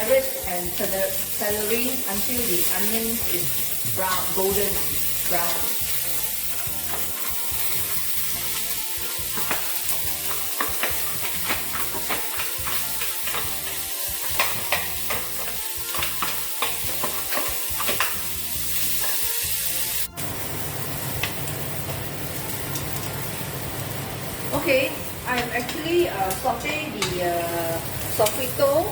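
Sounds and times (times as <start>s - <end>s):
vegetables sizzling in oil: 0.0s - 28.9s
utensil scraping a pan: 0.1s - 20.0s.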